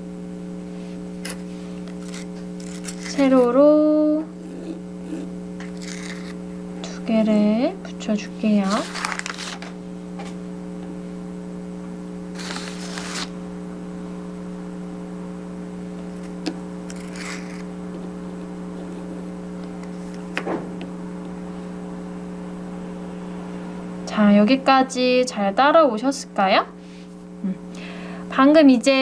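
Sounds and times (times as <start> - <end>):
electrical hum: 0.0 - 29.0
rustling: 12.4 - 13.3.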